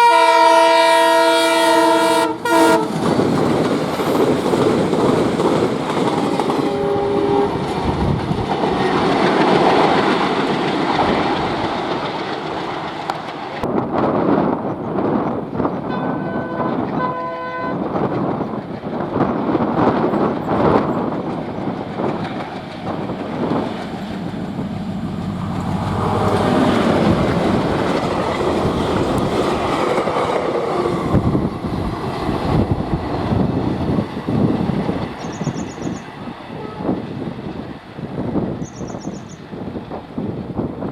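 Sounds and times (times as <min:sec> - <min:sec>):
train rumble: 0:00.0 - 0:40.9
train wheels clattering over rail joints: 0:02.9 - 0:07.0, 0:07.6 - 0:14.7, 0:18.0 - 0:36.4.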